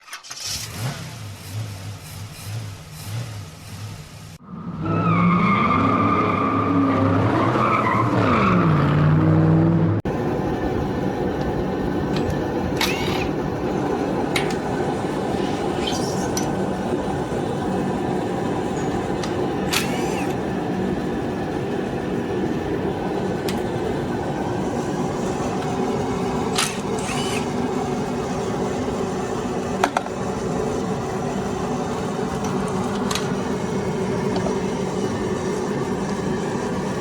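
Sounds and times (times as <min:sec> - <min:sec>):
engine idling and revving: 0:00.0 - 0:37.0
mechanical hum: 0:10.1 - 0:37.0.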